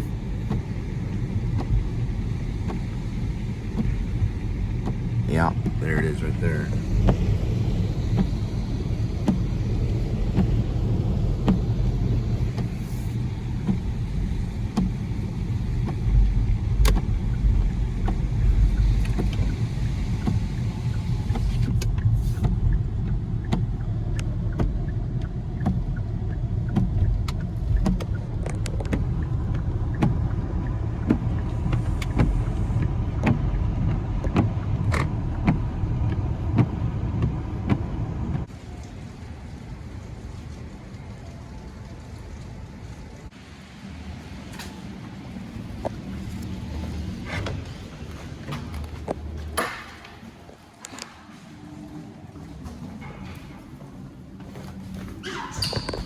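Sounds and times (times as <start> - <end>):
car engine and road rumble: 0.0 - 56.0.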